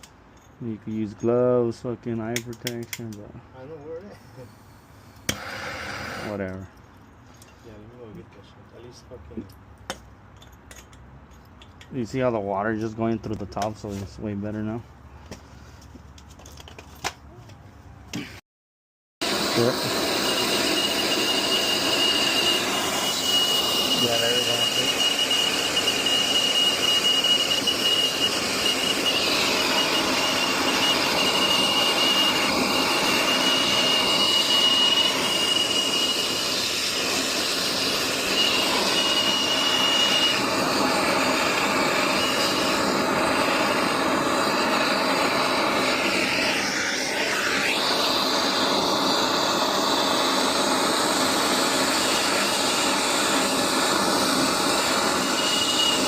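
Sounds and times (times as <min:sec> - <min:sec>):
torch flame hissing: 0:04.2 - 0:06.6, 0:19.2 - 0:56.0
thin high whistle: 0:19.5 - 0:51.0, 0:51.6 - 0:56.0.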